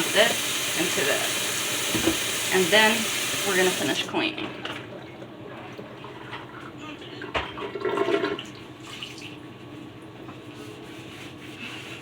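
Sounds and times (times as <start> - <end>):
knock: 1.9 - 2.2.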